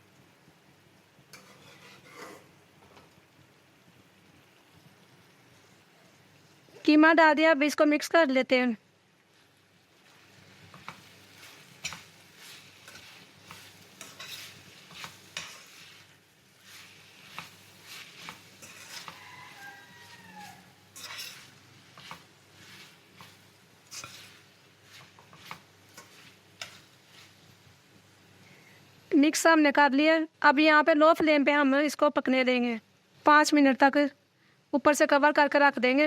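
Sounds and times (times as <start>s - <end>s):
spoon stirring food in pot: 1.3s - 2.5s, 10.0s - 27.6s
spoon scraping and tapping pot: 1.3s - 3.1s, 10.7s - 16.0s, 16.8s - 27.3s.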